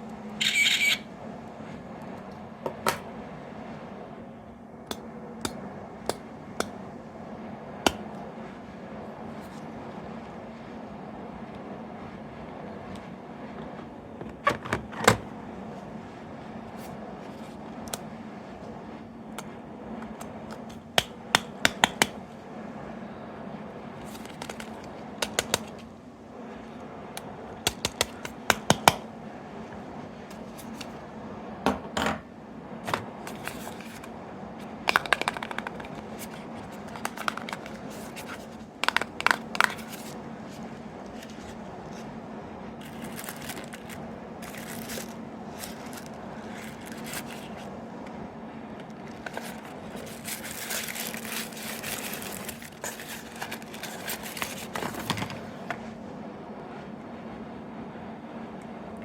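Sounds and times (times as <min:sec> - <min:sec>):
steady low hum: 0:00.0 - 0:59.0
plastic toys clicking and tapping: 0:34.9 - 0:36.0, 0:36.8 - 0:37.8, 0:38.8 - 0:39.8.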